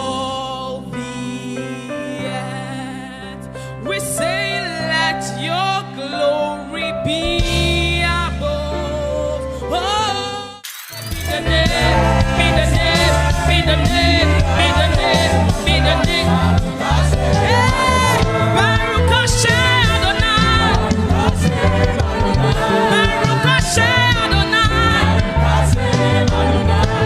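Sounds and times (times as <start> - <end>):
heavy bass line: 11.1 - 27.0
gospel singing voices: 11.2 - 27.0.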